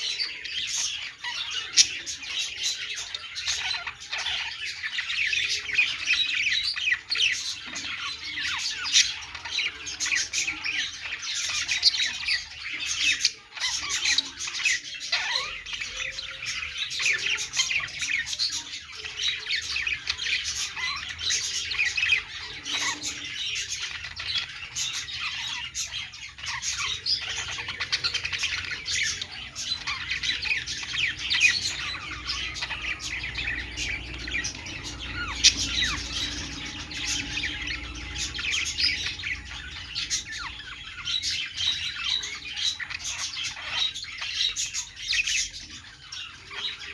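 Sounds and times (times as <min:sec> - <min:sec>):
budgerigars chattering: 0:00.0 - 0:46.9.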